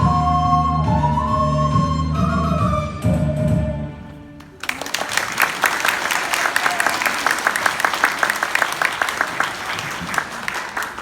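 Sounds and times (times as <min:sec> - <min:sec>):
crowd applauding: 0:04.4 - 0:11.0.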